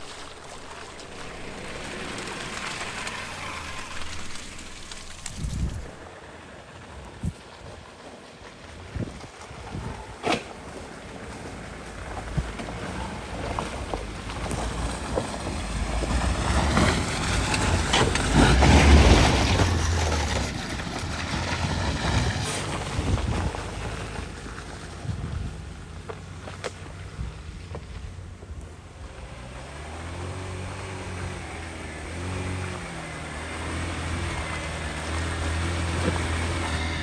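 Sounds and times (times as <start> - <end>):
water splashing: 0.0 - 25.0
car engine running under load: 0.0 - 37.0.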